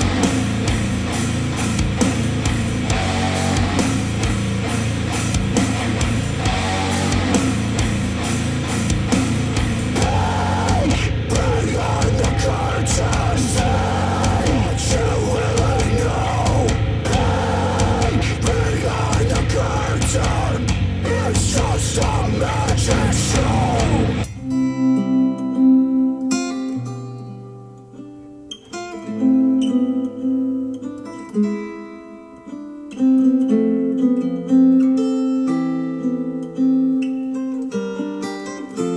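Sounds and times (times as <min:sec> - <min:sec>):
heavy rock music through speakers: 0:00.0 - 0:24.3.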